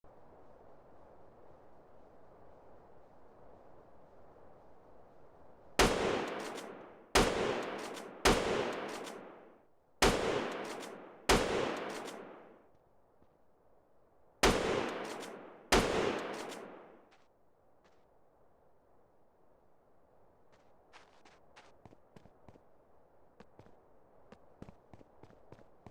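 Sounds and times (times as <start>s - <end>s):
loud sharp bangs: 5.8s - 12.6s, 14.4s - 17.0s.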